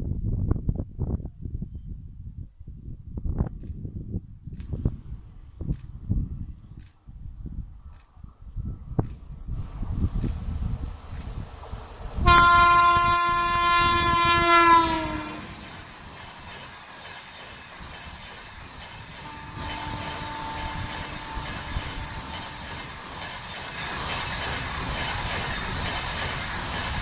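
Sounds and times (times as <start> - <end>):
train wheels rumbling and clacking: 9.0 - 27.0
train horn blast: 12.2 - 15.5, 19.2 - 23.0.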